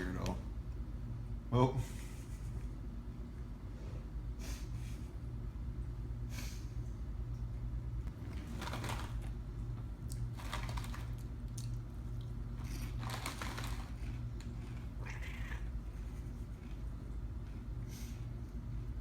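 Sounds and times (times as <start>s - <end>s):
steady low hum: 0.0s - 19.0s
cat crunching chips: 8.1s - 17.6s.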